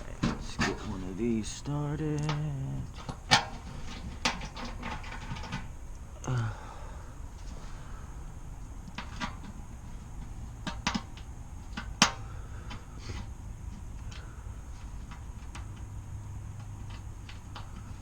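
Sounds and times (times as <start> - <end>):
low hum: 0.0 - 3.1.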